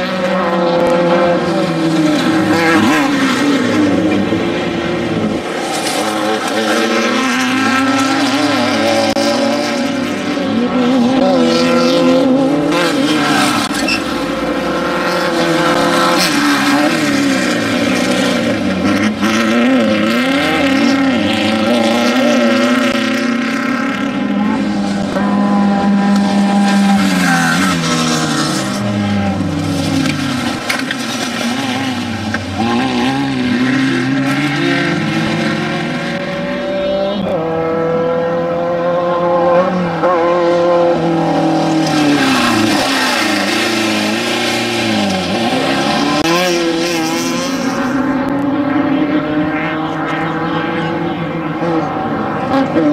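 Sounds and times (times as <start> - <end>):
engine revving hard: 32.6 - 51.8.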